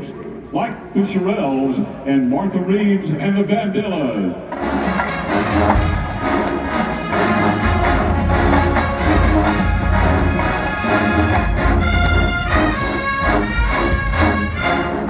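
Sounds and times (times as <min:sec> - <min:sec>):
marching band playing: 0:04.5 - 0:15.0.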